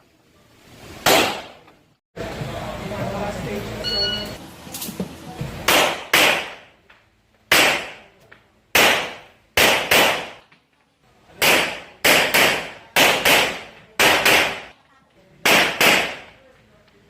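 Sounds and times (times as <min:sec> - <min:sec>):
pistol shots: 0:01.0 - 0:01.6, 0:05.7 - 0:06.7, 0:07.5 - 0:08.1, 0:08.7 - 0:10.5, 0:11.4 - 0:14.7, 0:15.4 - 0:16.3.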